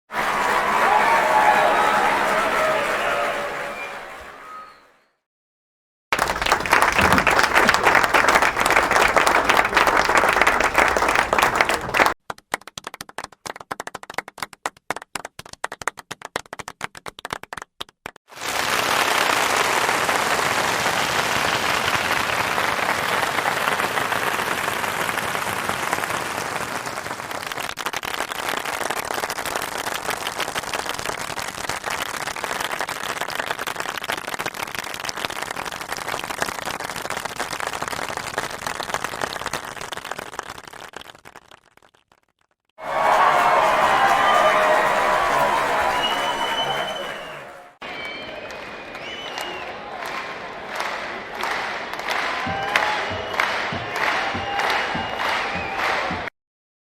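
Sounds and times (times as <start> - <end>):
crowd applauding: 0.0 - 5.0, 6.1 - 41.7, 42.8 - 56.3
few hands clapping: 0.1 - 4.3, 6.2 - 18.2, 27.4 - 47.6, 48.4 - 56.3.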